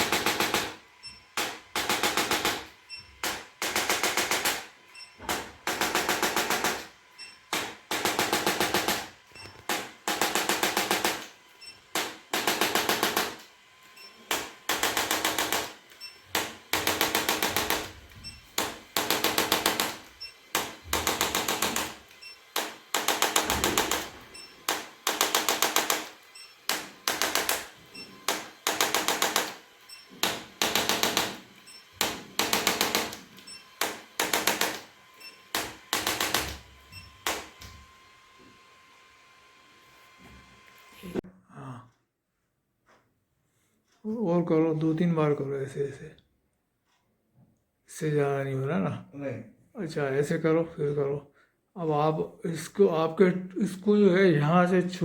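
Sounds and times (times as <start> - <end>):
rapid machine-like rattling taps: 0.0 - 37.8.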